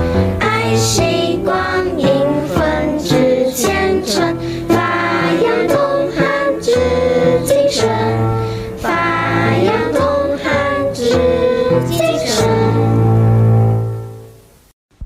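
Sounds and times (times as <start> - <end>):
instrumental backing with bass line: 0.0 - 15.0
choir singing: 0.4 - 13.4.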